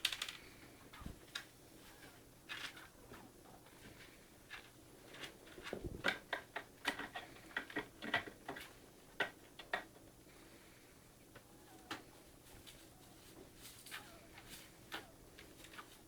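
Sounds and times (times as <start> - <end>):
small eating clicks and smacks: 3.7 - 10.2.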